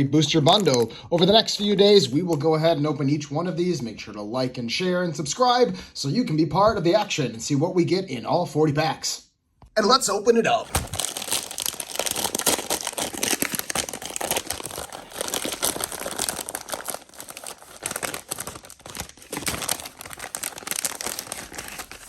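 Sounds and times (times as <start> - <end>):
packaging crinkling and tearing: 0.5 - 1.7, 10.6 - 22.0.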